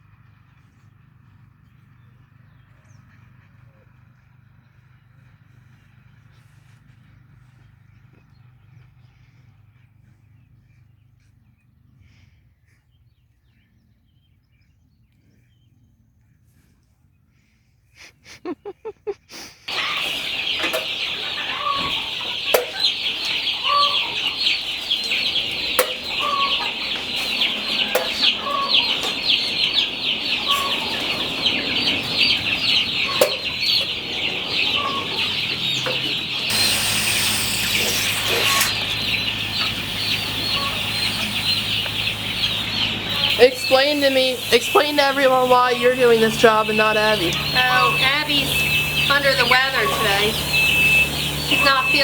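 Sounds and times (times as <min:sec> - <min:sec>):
chicken clucking: 0:18.2 - 0:52.0
chicks chirping: 0:19.7 - 0:52.0
steady hiss: 0:19.7 - 0:52.0.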